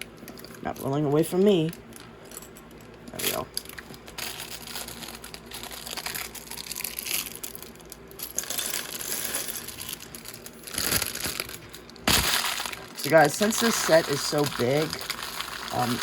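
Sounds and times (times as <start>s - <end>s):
plastic bags crinkling: 0.0s - 16.0s.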